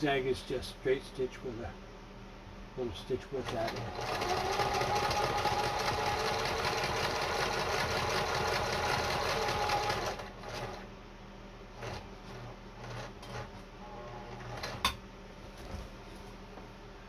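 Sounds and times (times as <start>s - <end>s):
sewing machine running: 3.4s - 10.9s, 11.8s - 14.9s.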